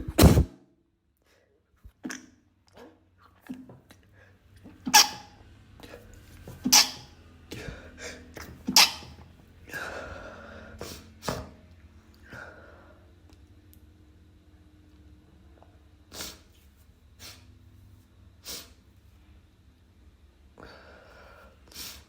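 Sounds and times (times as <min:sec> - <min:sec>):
person sneezing: 0:00.0 - 0:00.5, 0:07.6 - 0:09.1
stifled sneezes and breaths: 0:05.8 - 0:11.6, 0:16.1 - 0:16.6.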